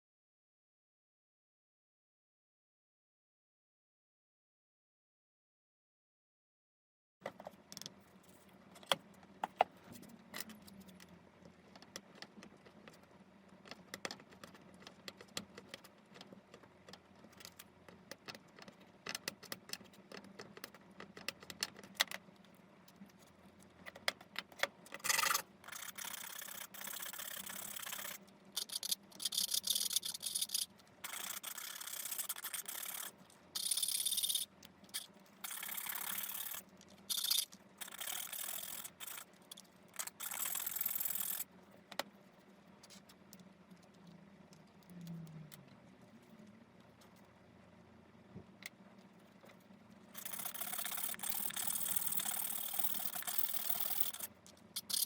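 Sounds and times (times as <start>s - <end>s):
small hard objects clicking: 23.9s - 41.5s, 50.2s - 55.0s.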